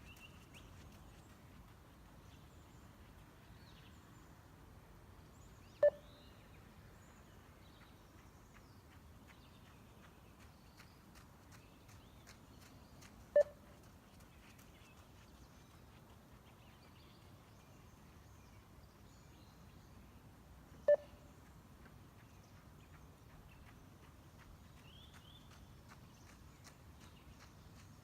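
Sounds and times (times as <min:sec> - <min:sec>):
short beeps: 0:05.8 - 0:06.0, 0:13.4 - 0:13.6, 0:20.9 - 0:21.2.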